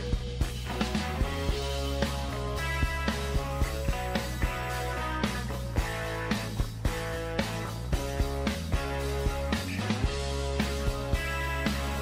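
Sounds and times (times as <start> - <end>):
rock music with guitar and drums: 0.0 - 12.0.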